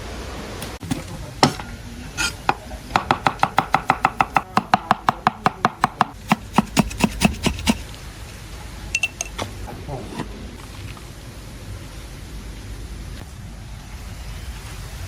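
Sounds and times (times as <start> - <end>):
knife chopping on cutting board: 0.7 - 7.8.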